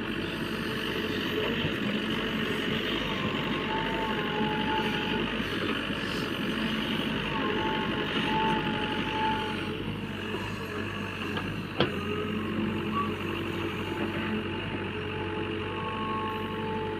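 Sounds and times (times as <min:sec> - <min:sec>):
heavy machine engine running: 0:00.0 - 0:16.9
reversing alarm beeping: 0:02.6 - 0:05.4, 0:07.0 - 0:11.2.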